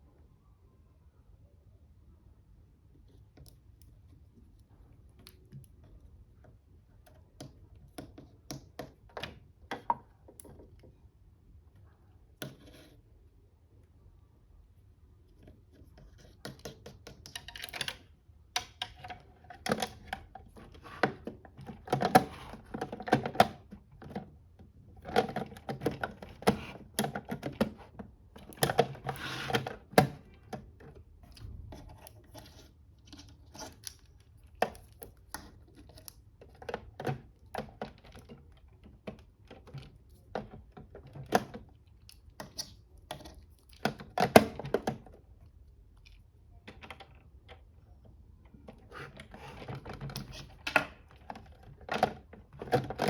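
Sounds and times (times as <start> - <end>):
plastic toys clicking and knocking: 16.2 - 45.3, 48.6 - 53.0.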